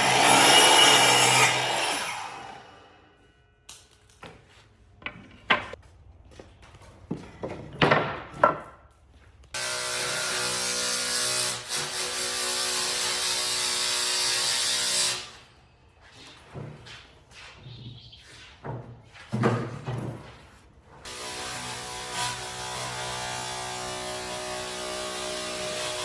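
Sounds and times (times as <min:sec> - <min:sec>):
power tool running on wood: 0:00.0 - 0:02.9, 0:21.1 - 0:26.0.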